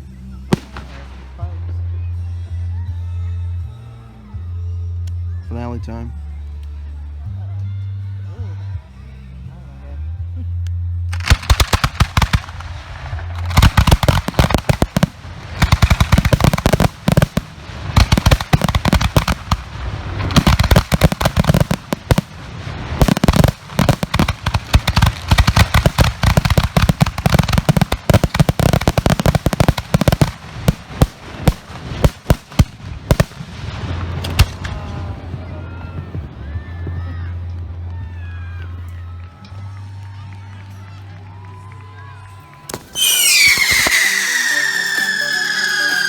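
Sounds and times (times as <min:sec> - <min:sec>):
fireworks crackle: 0:00.0 - 0:02.0, 0:11.1 - 0:36.0, 0:41.9 - 0:46.0
fireworks bursts and booms: 0:00.5 - 0:02.0, 0:11.1 - 0:37.0, 0:42.7 - 0:46.0.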